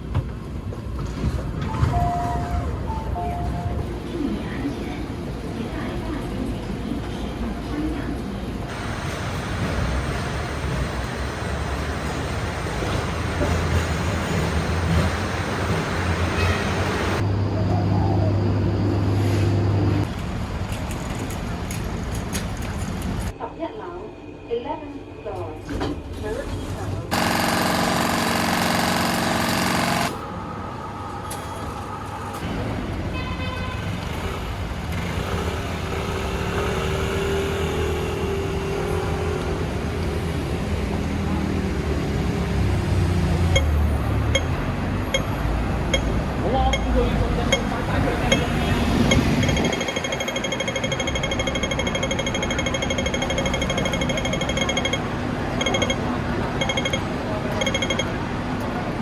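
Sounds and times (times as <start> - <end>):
street traffic noise: 0.0 - 23.5, 25.3 - 59.0
steady engine drone: 27.1 - 32.6
pedestrian crossing signal ticking: 43.6 - 58.2.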